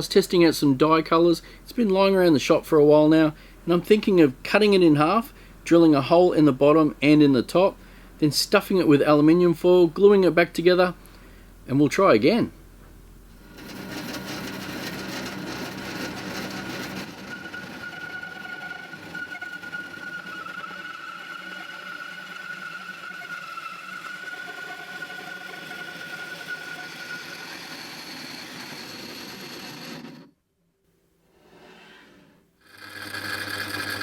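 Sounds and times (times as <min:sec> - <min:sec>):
power saw cutting resin: 0:13.4 - 0:30.3, 0:32.6 - 0:34.0.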